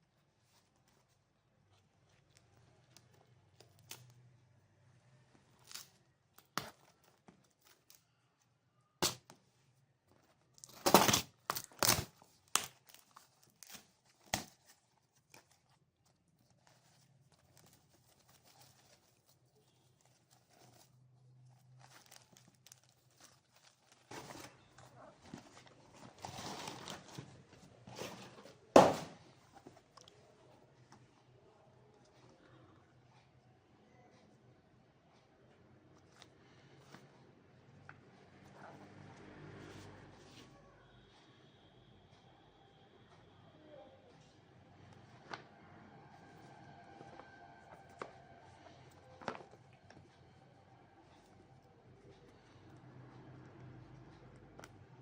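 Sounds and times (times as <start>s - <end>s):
packaging rustling and crinkling: 10.2s - 30.1s.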